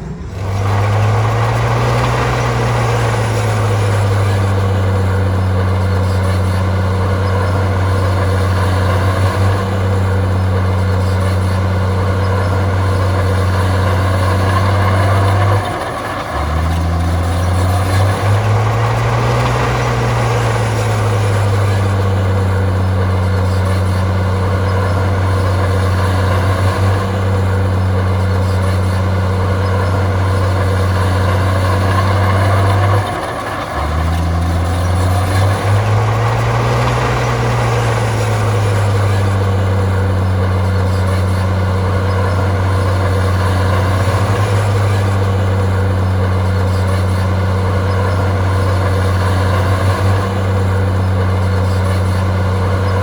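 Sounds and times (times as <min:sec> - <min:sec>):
bulldozer diesel engine running: 0:00.0 - 0:53.0.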